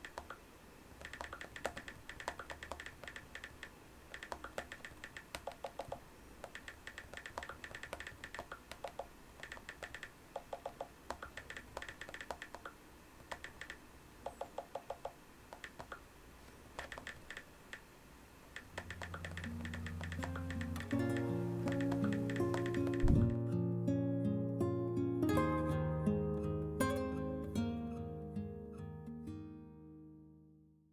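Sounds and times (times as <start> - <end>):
tablet key taps: 1.0 - 16.0, 16.7 - 17.8, 18.6 - 23.4
music: 18.8 - 30.8.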